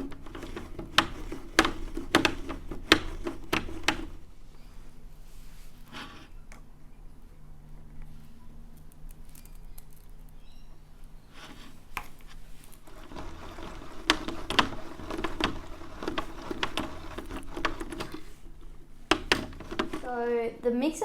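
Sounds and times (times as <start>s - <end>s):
hand-cranked mixer clicking: 0.0s - 4.3s, 12.8s - 20.1s.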